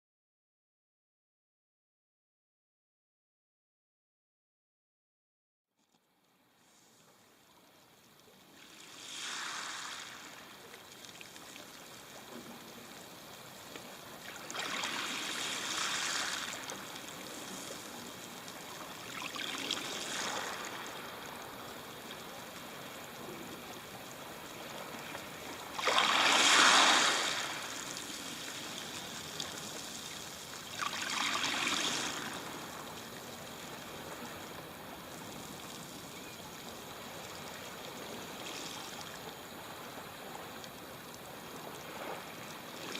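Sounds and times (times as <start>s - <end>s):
waves washing on stony shore: 8.5s - 35.6s.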